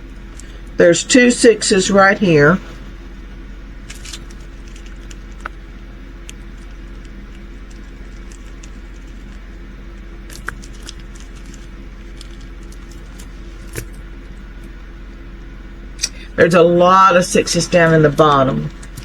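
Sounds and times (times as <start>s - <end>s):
low electrical hum: 0.0s - 19.0s
small items clicking: 0.1s - 0.8s, 3.8s - 14.8s, 18.7s - 19.0s.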